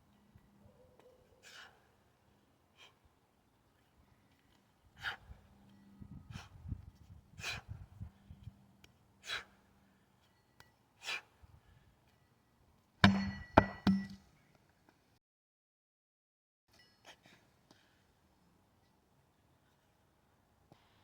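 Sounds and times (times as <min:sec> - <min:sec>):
loud ringing knock: 0:13.0 - 0:14.2.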